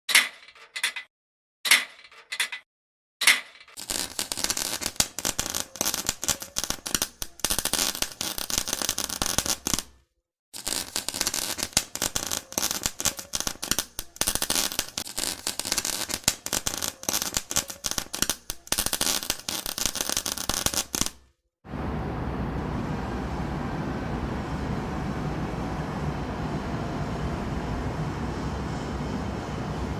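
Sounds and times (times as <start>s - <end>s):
welding arc crackling: 3.8s - 9.9s, 10.6s - 21.2s
steady low rumble: 21.7s - 29.9s.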